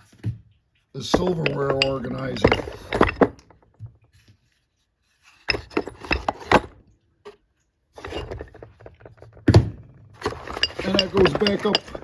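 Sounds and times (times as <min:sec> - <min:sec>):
stones knocking and clinking: 0:01.1 - 0:03.6, 0:05.5 - 0:06.7, 0:10.2 - 0:12.0.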